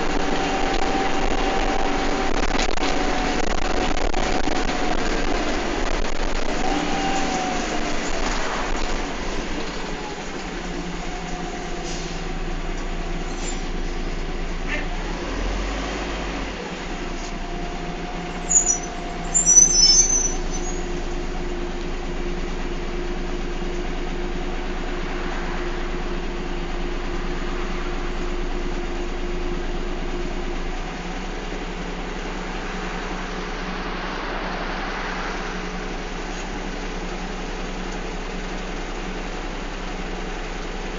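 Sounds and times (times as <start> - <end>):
bus engine droning with whine: 0.0 - 40.9
short high-pitched squeals: 6.4 - 8.4, 13.2 - 13.9, 18.3 - 21.0.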